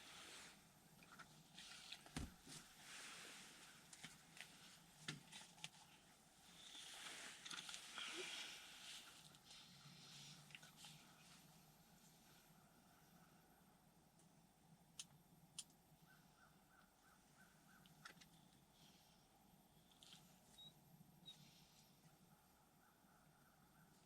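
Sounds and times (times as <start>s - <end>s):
faint rustling: 0.0s - 12.7s.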